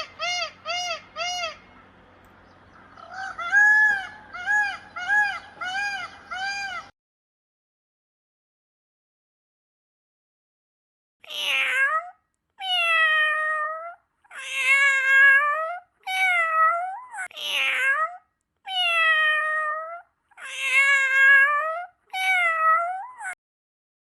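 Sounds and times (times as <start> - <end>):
cat meowing: 11.2 - 23.4.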